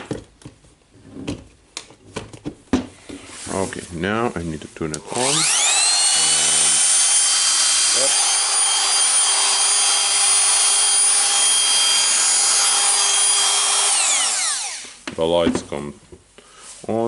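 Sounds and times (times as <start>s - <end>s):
router motor whining: 5.0s - 15.0s.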